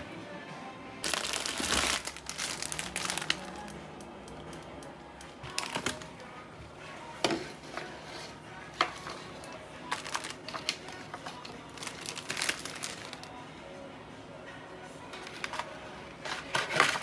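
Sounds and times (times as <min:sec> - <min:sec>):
quiet background music: 0:00.0 - 0:17.0
plastic packaging crinkling: 0:01.0 - 0:03.8, 0:05.4 - 0:06.3, 0:08.8 - 0:13.3, 0:15.2 - 0:17.0.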